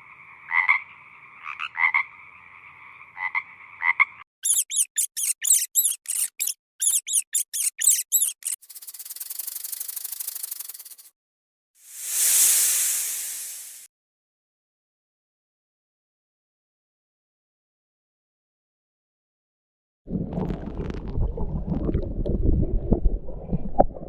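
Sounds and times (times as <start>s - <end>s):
frog-like croaking: 0.0s - 4.3s
fast high squeaks: 4.4s - 11.1s.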